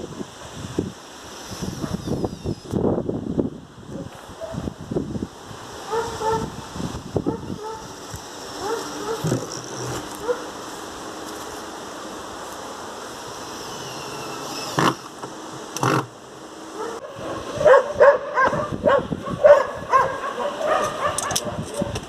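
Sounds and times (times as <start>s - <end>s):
dog barking and yipping: 5.9s - 6.5s, 7.2s - 9.4s, 10.2s - 10.5s, 16.8s - 21.9s.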